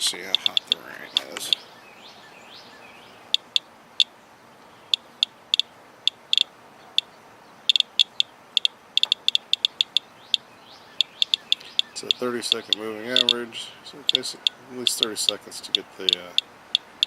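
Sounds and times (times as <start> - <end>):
geiger counter clicking: 0.3 - 1.6, 3.4 - 4.1, 4.9 - 6.5, 7.7 - 10.1, 11.0 - 13.4, 14.0 - 16.9.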